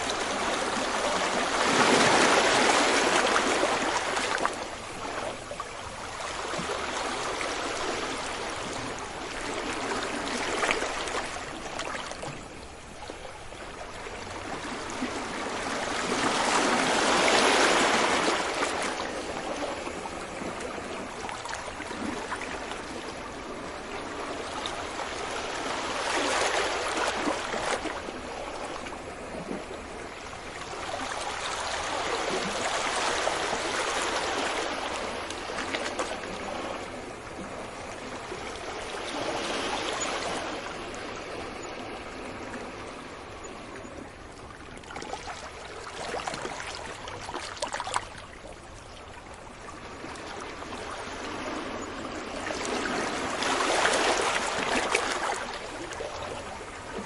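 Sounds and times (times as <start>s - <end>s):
sea waves washing up a beach: 0.0s - 57.0s.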